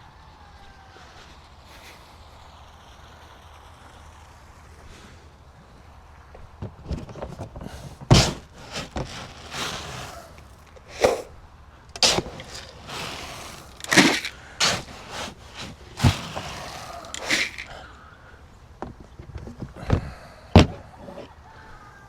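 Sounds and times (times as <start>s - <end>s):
rustling: 6.4s - 18.1s
containers knocking and clattering: 7.0s - 11.3s, 11.9s - 17.8s.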